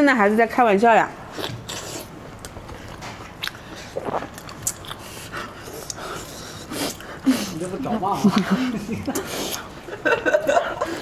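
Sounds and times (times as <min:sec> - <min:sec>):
person chewing food: 0:01.3 - 0:07.4.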